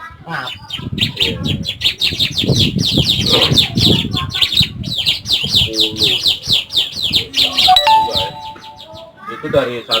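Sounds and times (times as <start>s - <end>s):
bird chirping rapidly: 6.2s - 9.0s.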